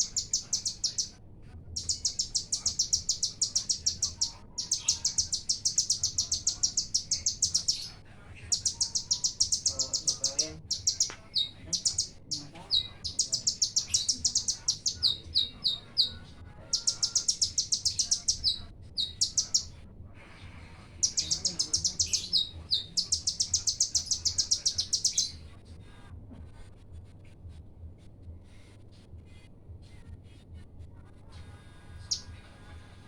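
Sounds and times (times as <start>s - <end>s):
faint bird chips: 0.0s - 1.1s, 1.8s - 16.1s
sunbird singing rapid trills: 0.0s - 1.2s, 1.8s - 19.7s, 21.0s - 25.4s, 32.0s - 32.3s.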